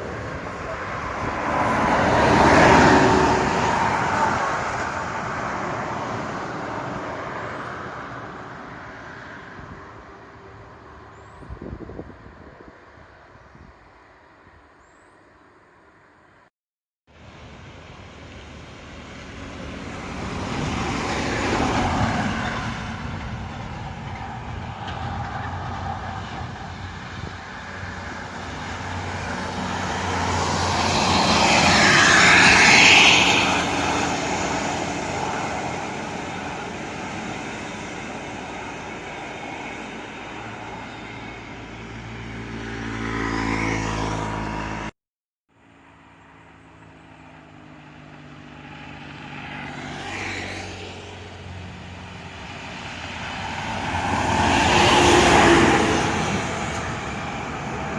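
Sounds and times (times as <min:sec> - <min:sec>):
buses passing uphill: 0:00.0 - 0:16.5, 0:17.1 - 0:44.9, 0:45.6 - 0:57.9
low engine sound: 0:17.1 - 0:44.9.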